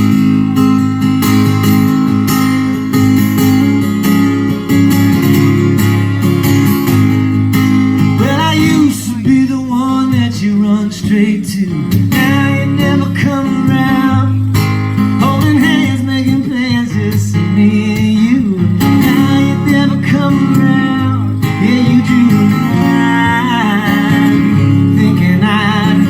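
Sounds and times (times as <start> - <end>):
acoustic guitar strumming: 0.0 - 26.0
man singing: 8.1 - 26.0.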